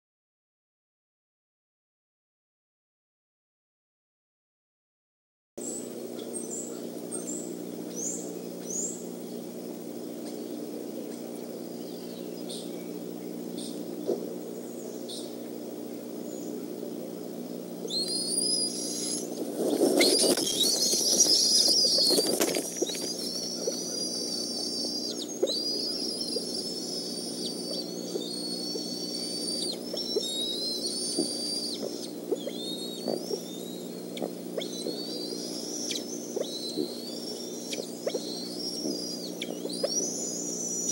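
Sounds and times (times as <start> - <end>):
steady low hum: 5.6 - 40.9
eaglets piping begging calls: 17.8 - 40.9
wing flapping and scuffling: 19.0 - 23.9.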